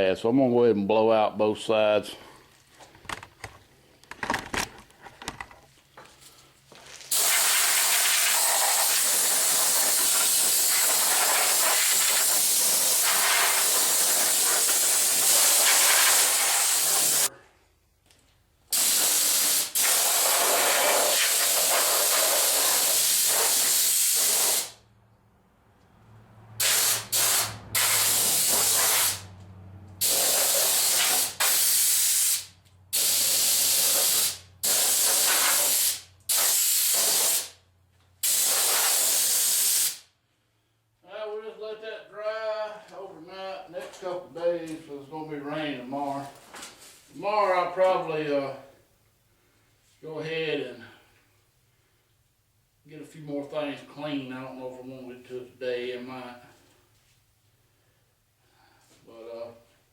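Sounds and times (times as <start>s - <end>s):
compressed air hissing: 7.1s - 17.3s, 18.7s - 24.8s, 26.6s - 29.3s, 30.0s - 37.6s, 38.2s - 40.1s.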